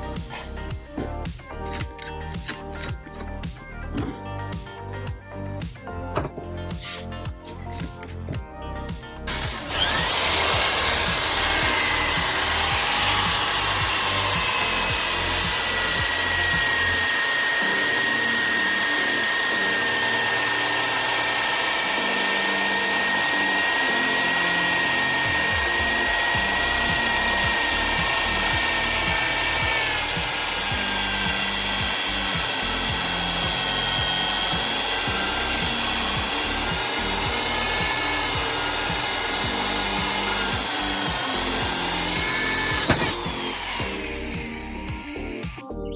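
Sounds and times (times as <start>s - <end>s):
background music with steady beat: 0.0s - 45.9s
power tool whining on wood: 9.3s - 45.7s.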